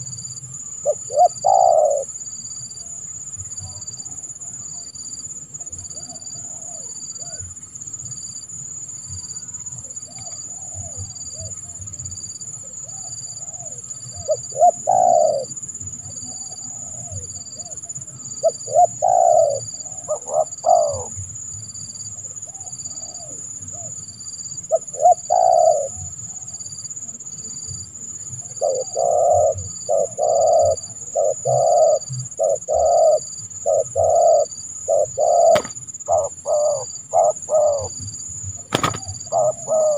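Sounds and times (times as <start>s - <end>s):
dove cooing: 0.8s - 2.2s, 12.7s - 21.2s, 24.6s - 26.2s, 28.4s - 39.9s.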